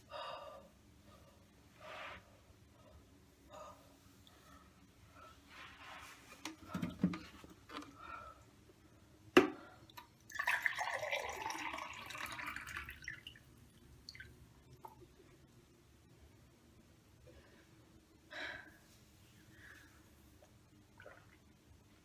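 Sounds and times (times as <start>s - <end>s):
water pouring: 10.3s - 13.5s.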